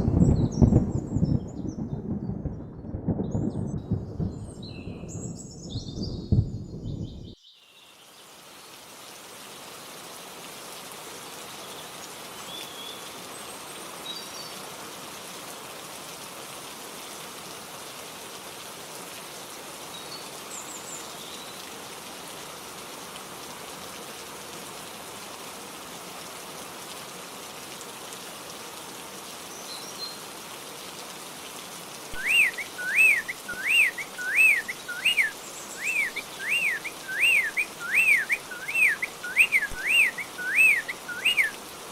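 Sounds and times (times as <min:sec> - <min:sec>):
steady rain falling: 0:00.0 - 0:41.9
bird whistling: 0:32.1 - 0:41.6
faint bird chirps: 0:32.1 - 0:41.6.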